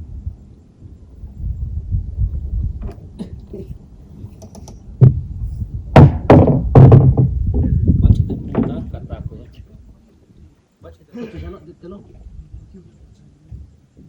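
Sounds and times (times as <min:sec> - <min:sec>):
steady low rumble: 0:00.0 - 0:11.0, 0:11.7 - 0:14.0
dull knocks and thumps: 0:02.2 - 0:09.3, 0:13.5 - 0:14.0.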